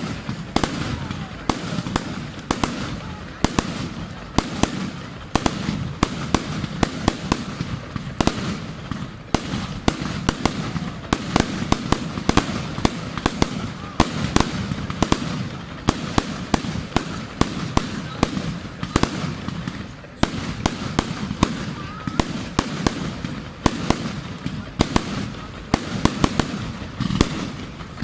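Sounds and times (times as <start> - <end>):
fireworks banging: 0.0 - 28.0.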